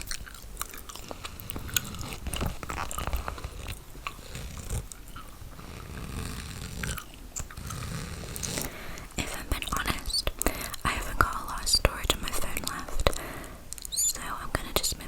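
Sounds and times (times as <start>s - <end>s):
gum chewing: 0.0s - 10.9s.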